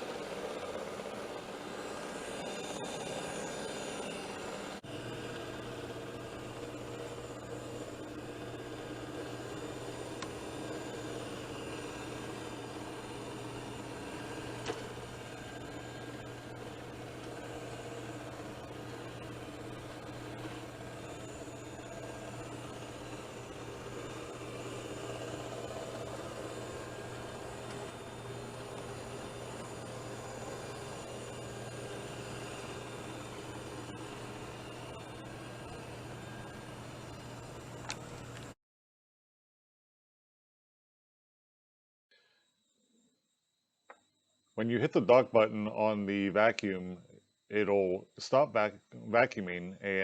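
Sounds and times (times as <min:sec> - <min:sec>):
robot vacuum motor hum: 0:00.0 - 0:38.6
vacuum brush noise: 0:00.0 - 0:38.6.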